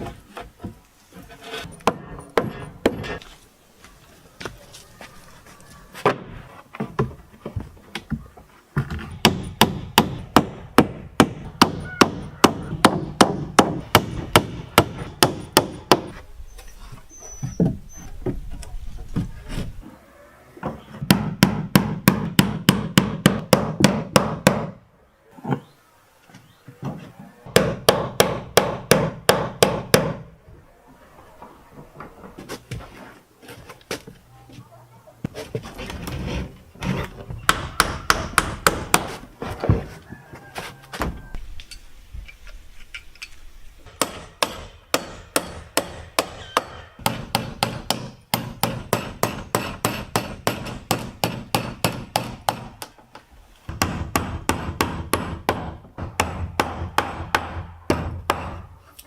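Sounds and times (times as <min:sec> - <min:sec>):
hammer striking wood: 0:08.8 - 0:16.2, 0:21.0 - 0:24.8, 0:27.5 - 0:30.3, 0:37.5 - 0:39.2, 0:43.9 - 0:52.9, 0:53.7 - 0:58.7.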